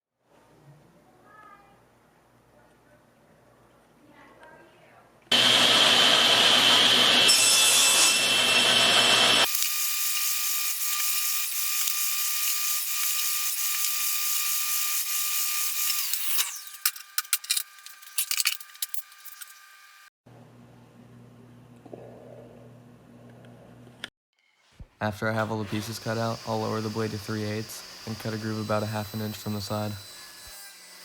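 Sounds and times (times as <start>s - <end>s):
table saw cutting wood: 5.3s - 20.1s, 25.4s - 31.0s.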